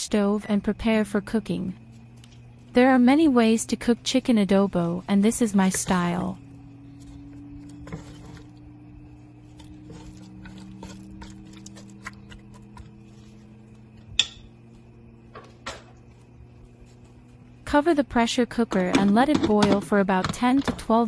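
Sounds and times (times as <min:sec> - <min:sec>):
stove hum: 0:00.0 - 0:21.0
chicken crackling in a pot: 0:05.7 - 0:14.4.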